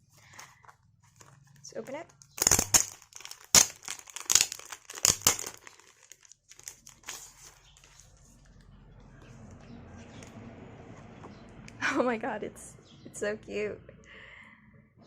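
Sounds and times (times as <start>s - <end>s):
wrapping torn and crinkled: 0.2s - 8.7s.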